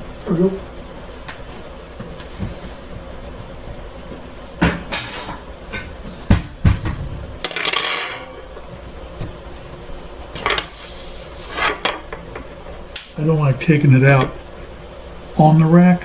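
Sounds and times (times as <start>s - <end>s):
metal kitchenware clanking: 7.5s - 8.6s.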